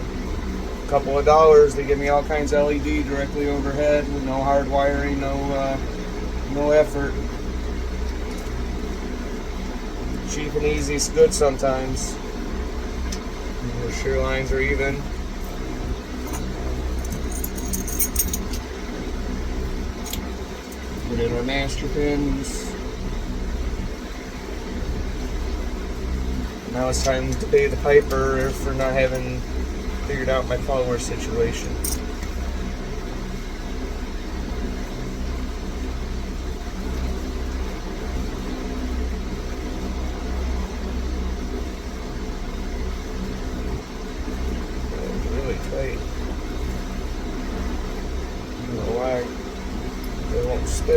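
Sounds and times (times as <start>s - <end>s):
steady low hum: 0.0s - 50.9s
metal lock pins clinking: 16.2s - 18.7s, 20.0s - 20.3s, 31.7s - 32.0s.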